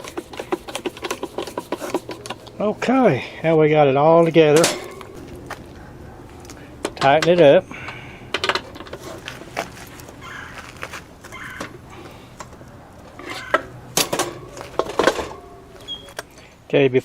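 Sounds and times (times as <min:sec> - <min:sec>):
metal clicks and knocks: 0:06.8 - 0:09.0.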